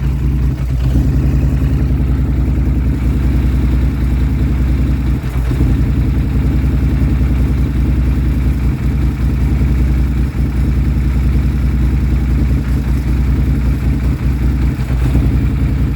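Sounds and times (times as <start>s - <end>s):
engine idling roughly: 0.0s - 15.9s.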